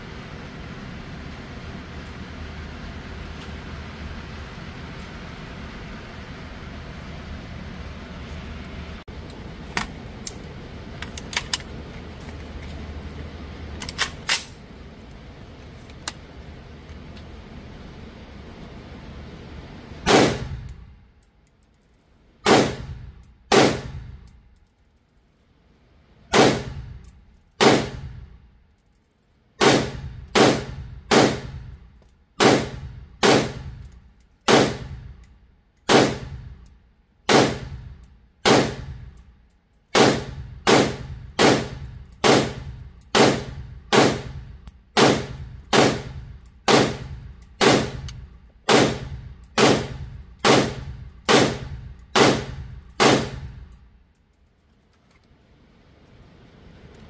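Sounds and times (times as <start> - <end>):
pistol shots: 20.1 - 20.6, 22.4 - 24.0, 26.3 - 26.8, 27.6 - 28.1, 29.6 - 31.6, 32.4 - 33.7, 34.5 - 35.0, 35.9 - 36.4, 37.3 - 37.8, 38.4 - 38.9, 39.9 - 44.4, 45.0 - 48.1, 48.7 - 53.5.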